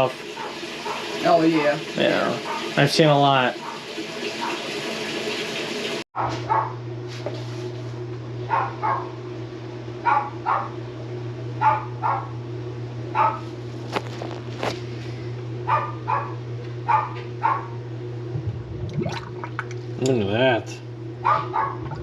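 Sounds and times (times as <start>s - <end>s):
dog barking: 2.4s - 2.7s, 6.2s - 6.8s, 8.5s - 9.1s, 10.0s - 10.8s, 11.6s - 12.4s, 13.1s - 13.5s, 15.7s - 17.8s, 21.2s - 21.8s
steady low hum: 7.7s - 22.0s.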